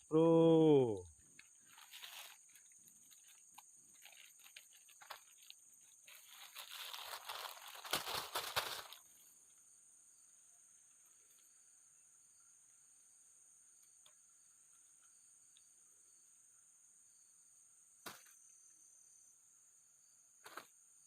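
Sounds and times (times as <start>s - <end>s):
high insect drone: 0.0s - 21.0s
crinkling rustling handling noise: 1.3s - 9.2s.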